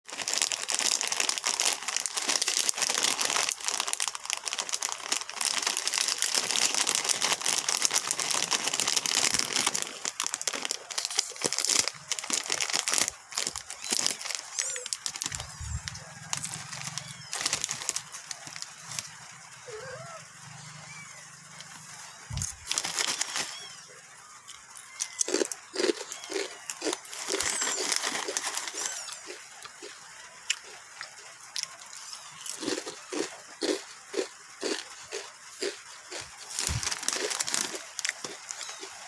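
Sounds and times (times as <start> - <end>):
plastic wrapper crinkling: 0.1 - 19.2, 21.6 - 23.8, 24.5 - 29.9, 35.6 - 39.0.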